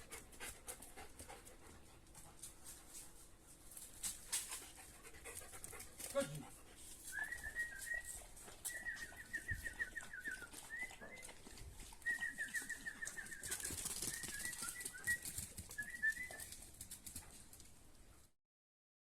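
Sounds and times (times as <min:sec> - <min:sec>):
songbird singing: 0:07.2 - 0:11.4, 0:12.0 - 0:13.5.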